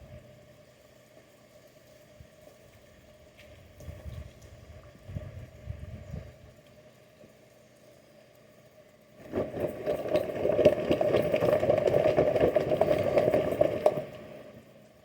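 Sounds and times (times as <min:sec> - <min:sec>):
rough rattling vehicle engine: 0:09.2 - 0:14.8.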